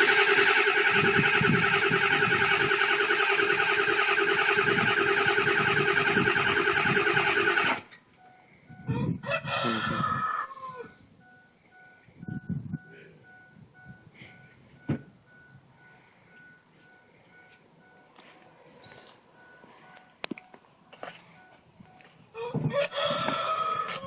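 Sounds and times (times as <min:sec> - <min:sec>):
diesel engine cranking: 0:00.0 - 0:08.9
faint beep: 0:08.2 - 0:09.1, 0:10.8 - 0:20.6, 0:21.3 - 0:22.1
rooster crowing: 0:08.9 - 0:11.0, 0:22.4 - 0:24.0.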